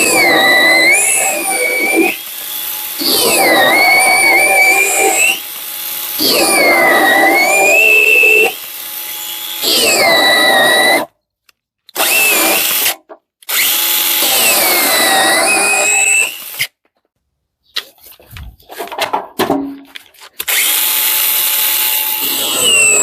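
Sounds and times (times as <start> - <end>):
chainsaw cutting branches: 0.7 - 4.0, 20.2 - 23.0.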